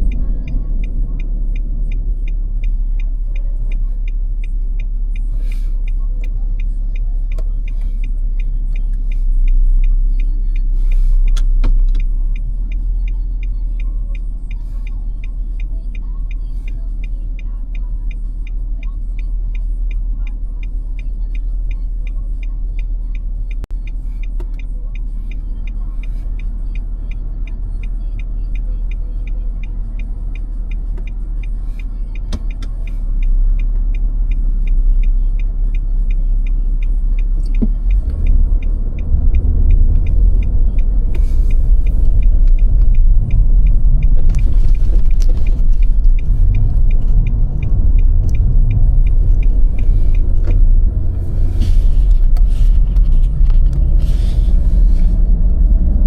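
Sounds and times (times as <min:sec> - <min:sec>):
fast even ticking: 0:00.0 - 0:56.0
road and engine rumble: 0:00.0 - 0:56.0.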